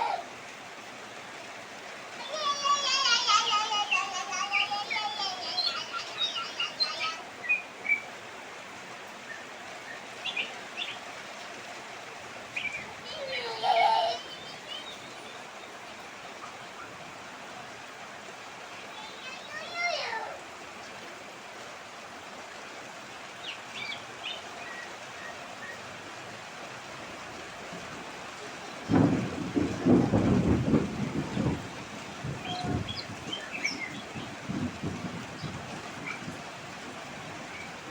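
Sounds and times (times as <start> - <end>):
heavy rain hissing: 0.0 - 37.9
birds chirping and whistling: 4.5 - 8.1, 14.1 - 15.8, 32.4 - 34.5
short rising bird calls: 12.5 - 15.8, 32.4 - 34.4
rumble of thunder: 27.7 - 37.9.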